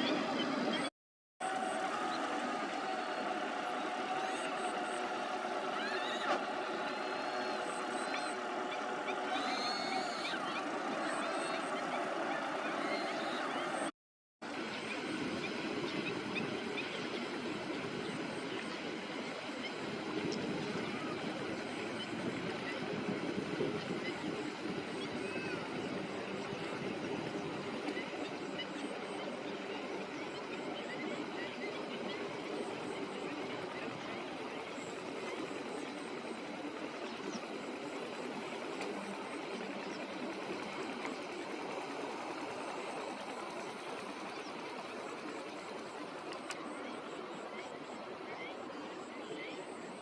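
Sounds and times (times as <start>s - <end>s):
faint bird calls: 3.8s - 13.8s, 23.8s - 26.6s.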